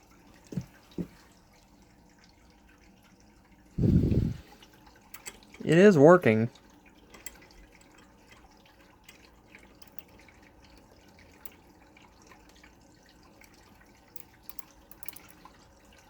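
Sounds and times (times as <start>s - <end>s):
ratchet wrench clicking: 14.2s - 15.4s.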